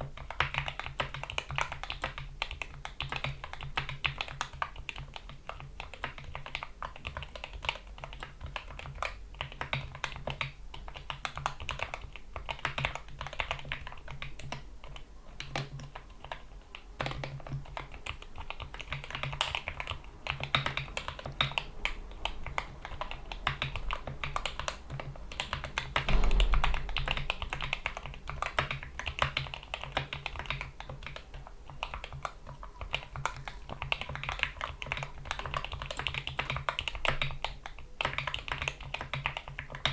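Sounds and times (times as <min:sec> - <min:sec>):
fast typing on mechanical keyboard: 0:00.0 - 0:39.9
heavy low thump: 0:26.1 - 0:28.1.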